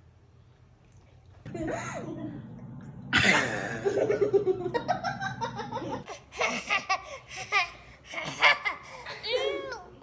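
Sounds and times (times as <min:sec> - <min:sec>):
laughter in pitched bursts: 0:03.2 - 0:09.4.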